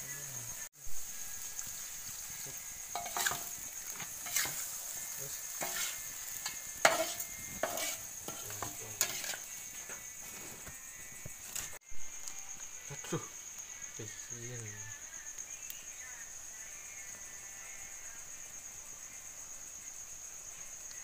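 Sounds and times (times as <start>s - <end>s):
insects chirring: 0.0s - 21.0s
food stirred in a pan: 1.3s - 11.8s.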